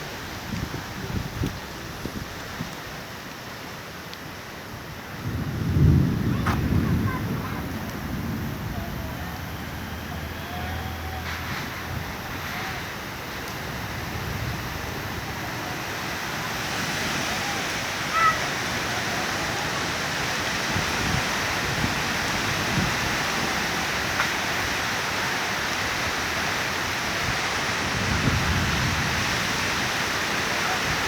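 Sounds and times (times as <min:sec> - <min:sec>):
strong wind rushing: 0:05.2 - 0:12.9.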